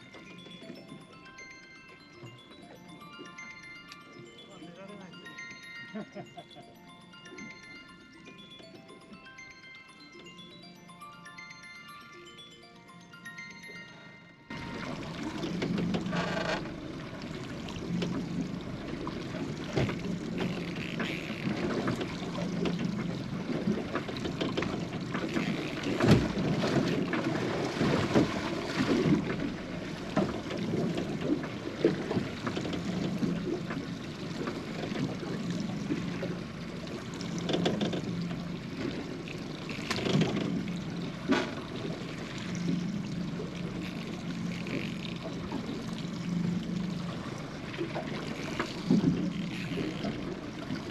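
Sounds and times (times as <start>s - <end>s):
water noise: 13.2s - 50.9s
low hum: 14.0s - 20.6s.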